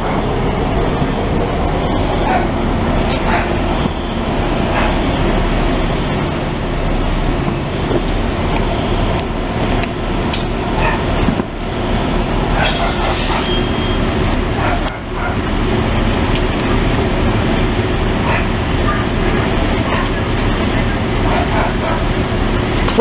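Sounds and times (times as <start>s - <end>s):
large vehicle engine rumbling: 0.0s - 23.0s
thin high whine: 5.4s - 8.5s.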